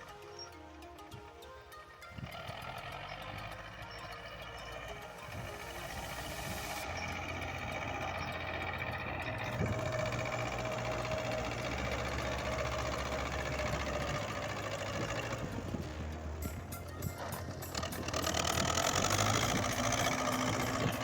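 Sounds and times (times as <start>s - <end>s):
snow blower engine running: 2.0s - 21.0s.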